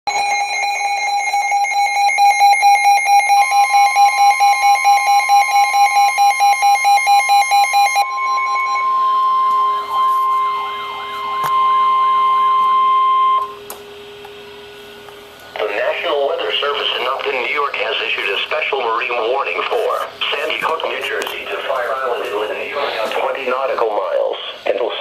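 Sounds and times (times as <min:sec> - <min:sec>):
buzzy pulsing beeps: 0:07.9 - 0:14.6
warbling alert tone: 0:08.0 - 0:13.6
steady higher tone: 0:08.0 - 0:24.0.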